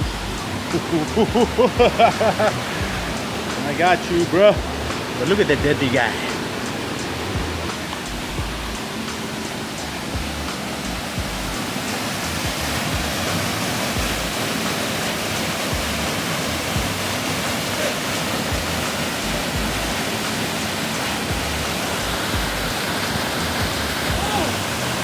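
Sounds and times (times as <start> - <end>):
flowing water rushing: 0.0 - 25.0.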